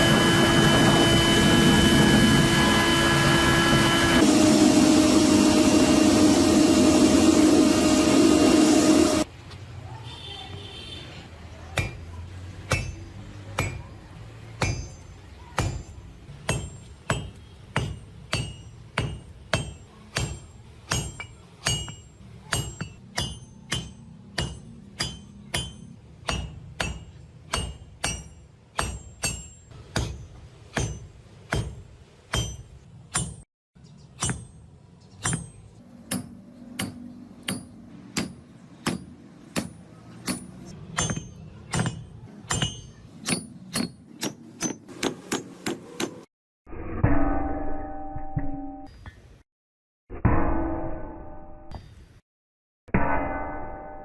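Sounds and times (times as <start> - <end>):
hammer blows on anvil: 34.2 - 46.3.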